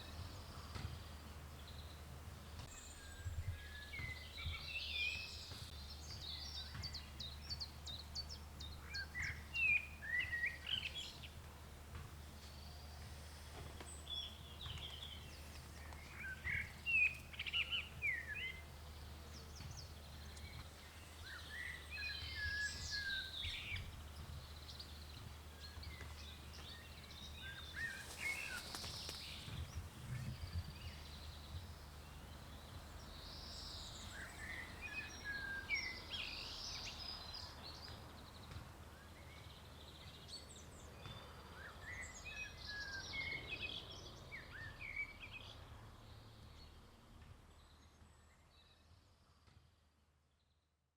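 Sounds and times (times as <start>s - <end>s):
birds chirping and singing: 12.3s - 37.9s.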